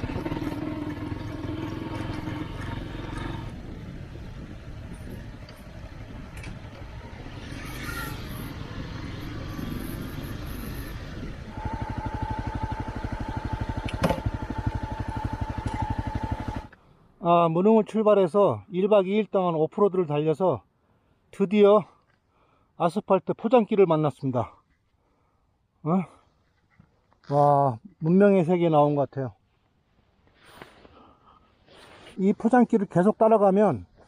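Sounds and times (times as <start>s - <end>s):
motorcycle engine running: 0.0s - 16.8s.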